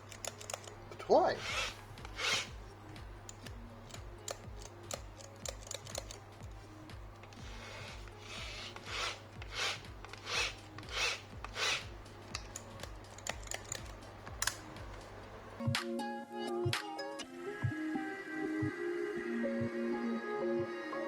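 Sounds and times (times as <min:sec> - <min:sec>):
small clicks of parts handled: 0:00.0 - 0:01.1, 0:03.2 - 0:06.6, 0:07.2 - 0:15.1
rhythmic scraping strokes: 0:00.0 - 0:15.6
music: 0:00.0 - 0:21.0.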